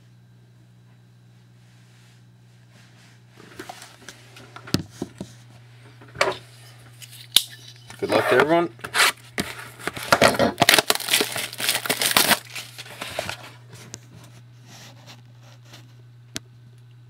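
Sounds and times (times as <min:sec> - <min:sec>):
plastic wrap crackling and tearing: 0:09.0 - 0:13.5.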